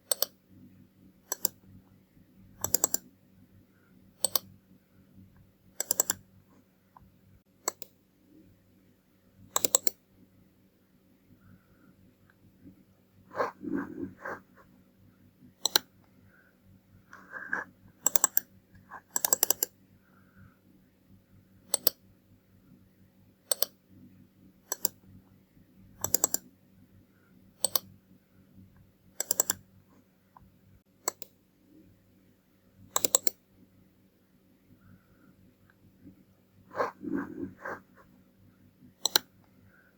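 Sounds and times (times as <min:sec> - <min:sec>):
mouse buttons clicking: 0:00.0 - 0:00.4, 0:01.3 - 0:01.6, 0:02.6 - 0:03.1, 0:04.2 - 0:04.5, 0:05.8 - 0:06.2, 0:07.6 - 0:08.0, 0:09.5 - 0:10.0, 0:15.6 - 0:15.9, 0:17.1 - 0:19.8, 0:21.7 - 0:22.0, 0:23.5 - 0:23.8, 0:24.7 - 0:25.0, 0:26.0 - 0:26.5, 0:27.6 - 0:27.9, 0:29.2 - 0:29.6, 0:31.0 - 0:31.4, 0:32.9 - 0:33.4, 0:39.0 - 0:39.3
faint steady hum: 0:00.0 - 0:39.9.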